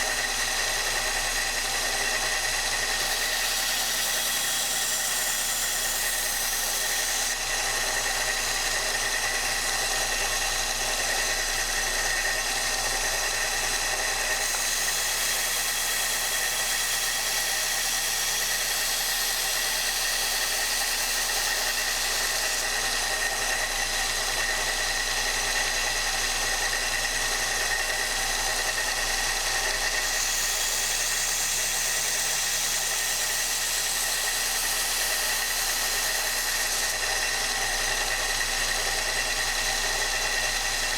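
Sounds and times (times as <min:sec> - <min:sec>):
belt sander motor hum: 0:00.0 - 0:40.9
steel hissing on sanding belt: 0:03.0 - 0:07.4, 0:14.2 - 0:23.0, 0:29.8 - 0:37.0.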